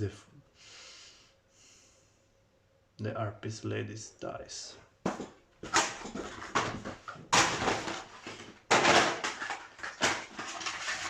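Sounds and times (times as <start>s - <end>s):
packaging rustling and scraping: 5.6s - 11.0s.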